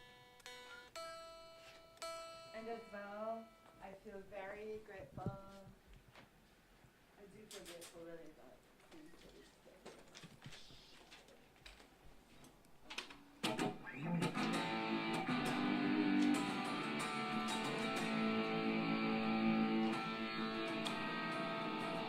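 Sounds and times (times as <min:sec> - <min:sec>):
guitar strumming chords: 0:13.4 - 0:22.0.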